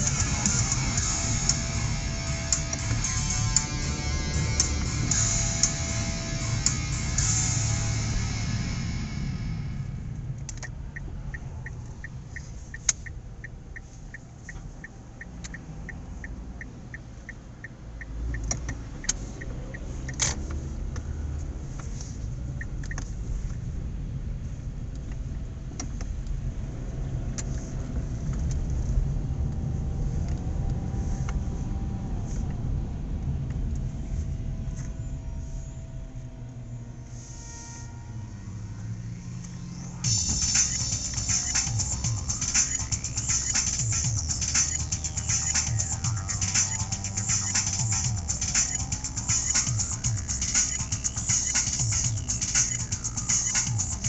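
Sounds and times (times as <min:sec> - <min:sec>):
engine and road rumble: 0:00.0 - 0:54.0
fast ticking: 0:40.0 - 0:54.0
sharp clicks: 0:40.3 - 0:54.0.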